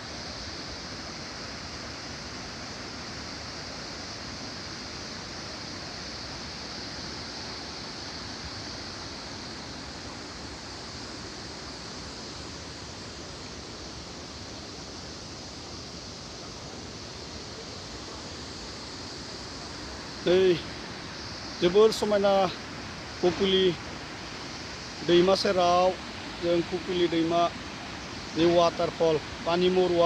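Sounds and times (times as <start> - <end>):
waterfall rushing: 0.0 - 30.0.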